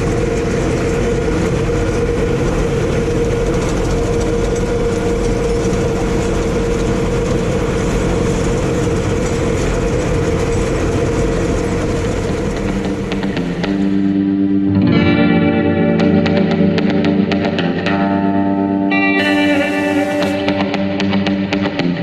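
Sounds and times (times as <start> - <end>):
hay baler clatter: 0.0 - 13.7, 19.2 - 20.6
tractor engine rumble: 0.0 - 14.1, 19.2 - 20.8
steady machine hum: 0.0 - 14.8, 18.9 - 21.2.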